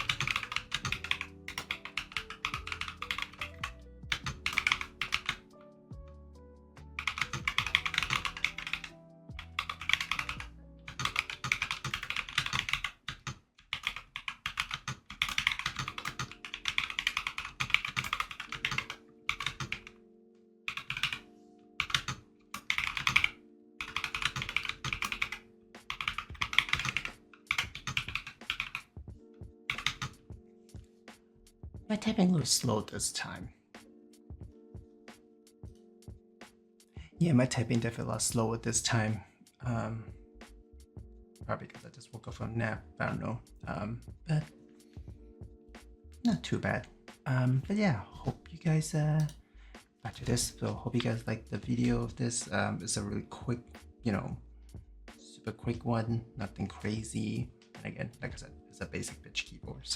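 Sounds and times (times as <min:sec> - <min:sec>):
mechanical keyboard key clacks: 0:00.0 - 0:05.4
lofi music: 0:00.0 - 0:59.9.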